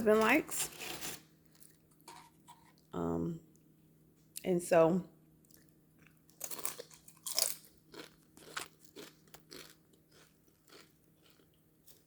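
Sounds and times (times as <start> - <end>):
chewing crunchy chips: 5.5 - 12.0.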